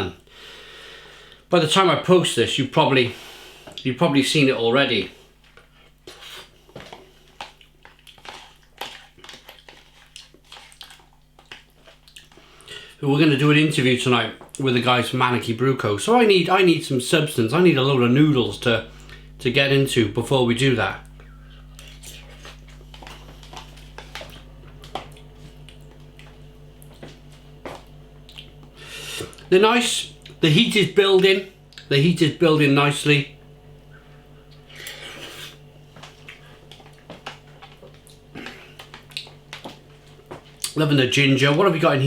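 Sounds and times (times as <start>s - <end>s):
steady low hum: 0.0s - 42.0s
chewing and slurping noodles: 5.5s - 12.8s, 34.6s - 40.8s.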